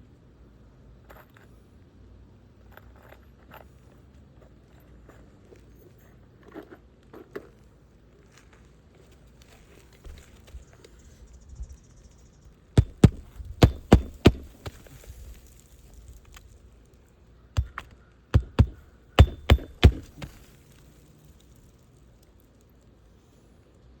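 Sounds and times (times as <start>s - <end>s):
hammer driving roofing nails: 12.8s - 15.0s, 17.6s - 20.6s.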